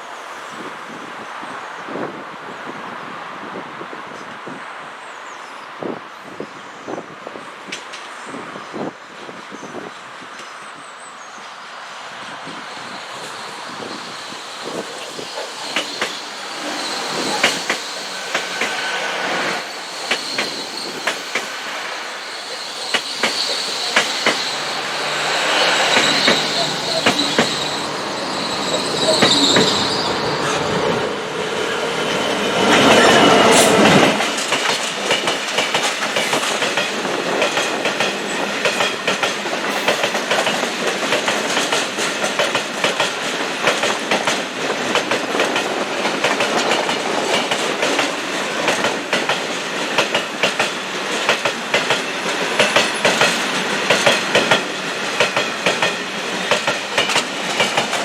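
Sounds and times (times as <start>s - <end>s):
high wheel squeal: 12.9s - 34.5s
train wheels clicking over rail joints: 14.0s - 19.1s, 19.8s - 21.8s, 22.4s - 29.8s, 32.7s - 58.0s.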